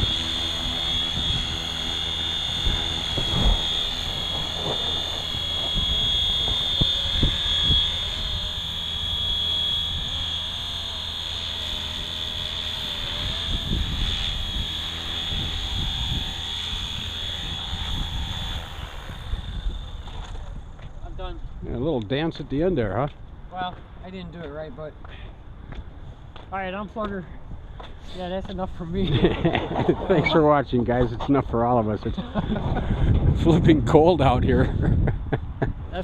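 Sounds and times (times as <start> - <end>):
wind buffeting microphone: 0.0 - 8.9, 12.9 - 22.0, 32.1 - 36.0
rc helicopter motor whine: 0.0 - 21.6.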